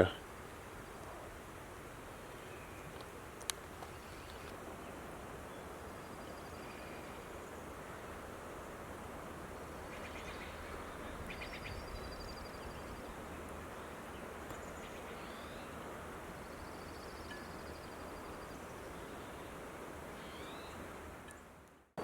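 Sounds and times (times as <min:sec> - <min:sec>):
songbirds chirping and trilling: 0:09.8 - 0:21.5.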